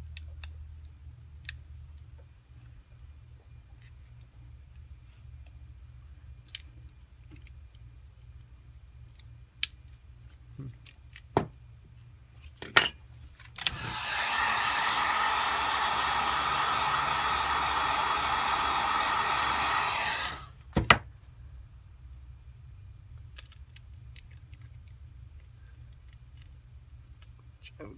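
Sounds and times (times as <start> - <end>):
hot-air blower running: 13.6 - 21.0.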